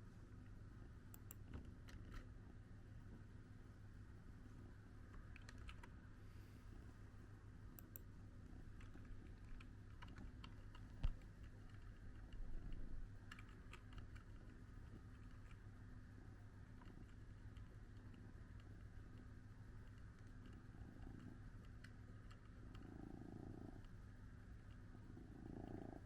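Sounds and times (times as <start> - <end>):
low steady hum: 0.0 - 26.0
light clicks and taps: 0.4 - 2.3, 5.0 - 6.0, 7.7 - 15.7, 16.6 - 22.9.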